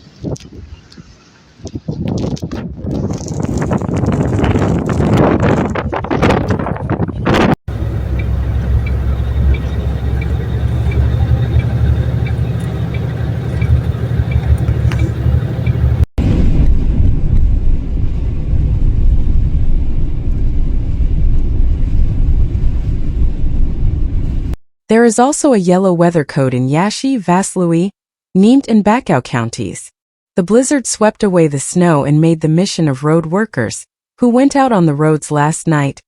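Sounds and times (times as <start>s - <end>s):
motor vehicle rumble: 3.2s - 24.6s
faint ticking: 7.7s - 16.1s.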